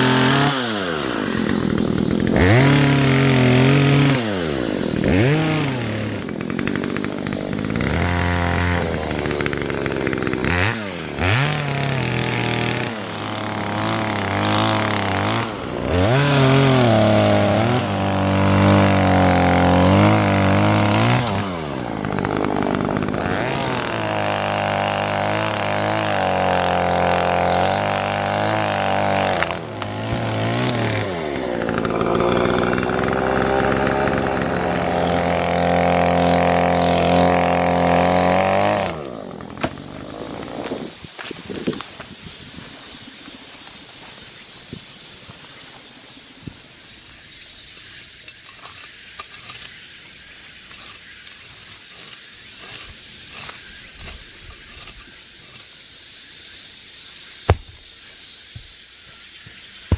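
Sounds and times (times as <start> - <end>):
chainsaw revving cutting wood: 0.0 - 41.9, 57.5 - 57.8.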